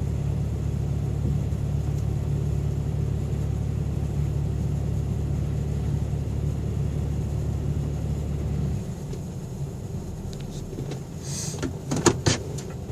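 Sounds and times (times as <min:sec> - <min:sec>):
car engine running: 0:00.0 - 0:12.9
low hum: 0:00.0 - 0:12.9.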